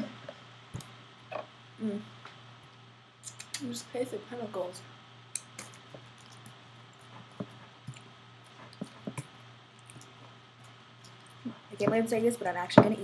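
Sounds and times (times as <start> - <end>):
low steady hum: 0.0 - 13.0
soft squishy sounds: 5.4 - 11.6.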